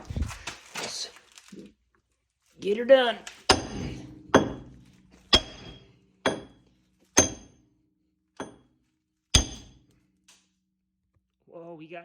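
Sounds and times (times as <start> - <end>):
hammer striking metal stud: 3.5 - 7.6, 8.4 - 8.7, 9.4 - 10.0.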